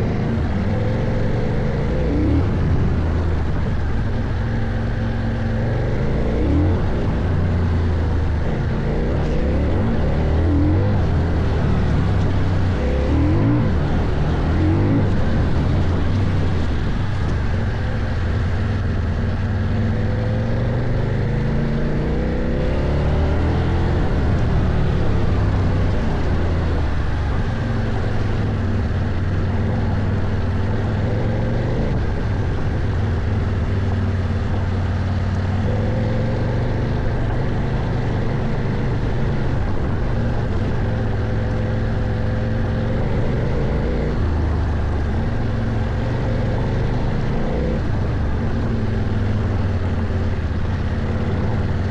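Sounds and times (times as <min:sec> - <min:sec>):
wind rush: 0:00.0 - 0:20.9
motorcycle engine revving: 0:00.0 - 0:51.9.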